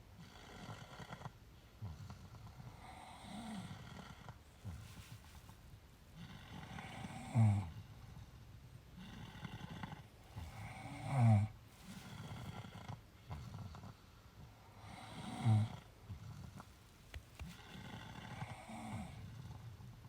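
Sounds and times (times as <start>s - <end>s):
deep snoring: 9.0s - 14.0s, 14.8s - 16.6s, 17.5s - 19.6s
soft breathing: 10.2s - 15.4s, 16.1s - 19.3s.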